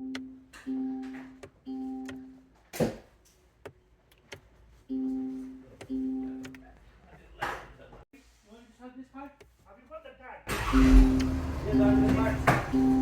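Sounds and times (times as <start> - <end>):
vehicle warning chime: 10.5 - 13.0.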